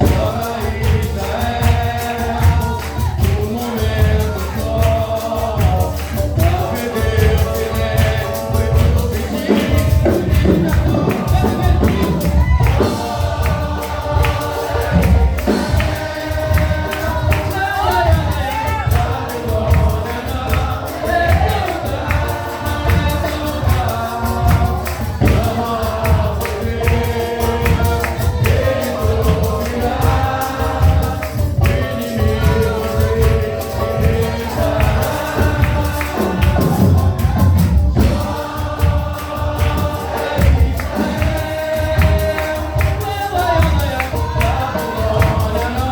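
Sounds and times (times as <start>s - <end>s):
strong bass beat: 0.0s - 45.9s
vocal group singing gospel: 0.0s - 45.9s.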